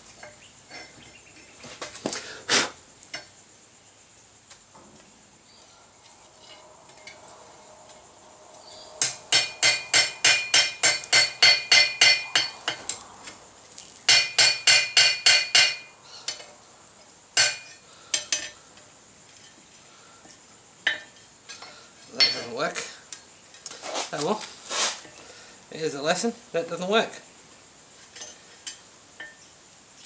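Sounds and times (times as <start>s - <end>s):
hammer striking metal: 9.0s - 12.9s, 14.1s - 15.9s, 17.4s - 17.9s, 22.2s - 22.7s.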